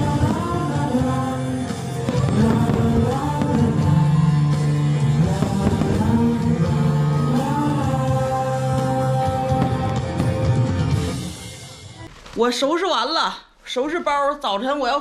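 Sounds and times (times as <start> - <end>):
pop song: 0.0 - 11.4.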